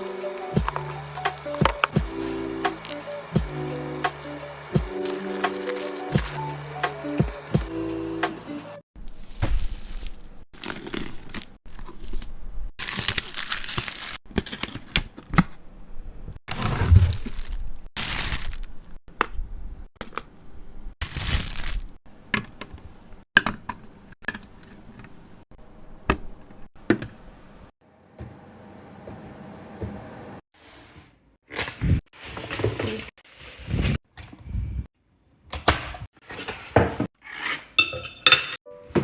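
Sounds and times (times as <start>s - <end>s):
wrapping crinkling and tearing: 0.0s - 4.3s, 5.0s - 6.7s, 9.0s - 15.0s, 16.5s - 19.0s, 21.0s - 22.0s
small items clicking and tapping: 0.5s - 3.1s.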